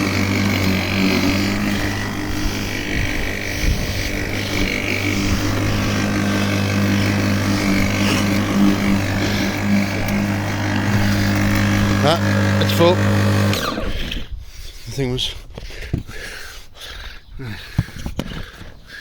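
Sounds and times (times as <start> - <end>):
electric lawnmower cutting grass: 0.0 - 14.3.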